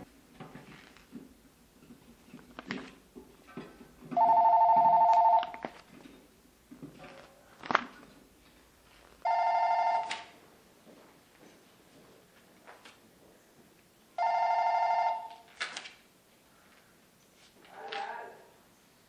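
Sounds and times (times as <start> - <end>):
telephone two-tone ringing: 4.2 - 5.6, 9.2 - 10.3, 14.2 - 15.4.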